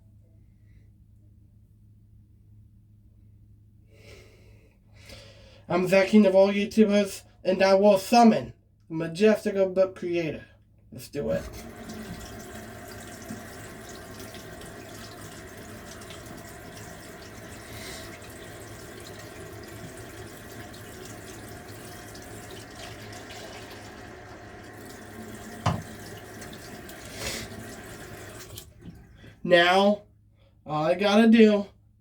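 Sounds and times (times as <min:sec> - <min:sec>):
water running from tap: 0:11.3 - 0:29.4.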